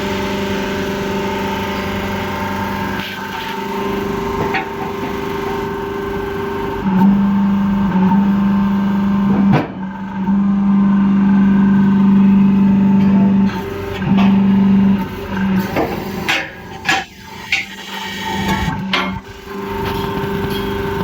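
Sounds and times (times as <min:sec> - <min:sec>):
welding machine humming: 0:00.0 - 0:21.0.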